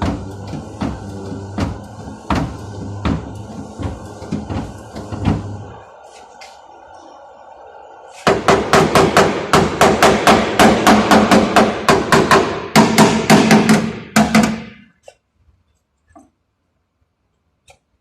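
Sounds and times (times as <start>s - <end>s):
hammer striking sheet metal: 8.2s - 14.9s.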